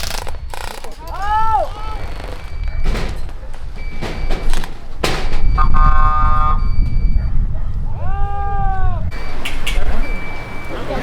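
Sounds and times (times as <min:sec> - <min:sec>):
sharp noisy bursts: 0:00.0 - 0:01.0
horn-like tone: 0:05.6 - 0:07.3.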